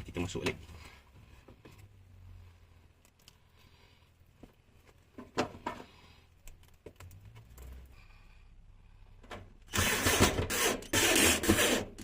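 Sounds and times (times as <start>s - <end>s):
small clicks and knocks: 4.4s - 7.9s.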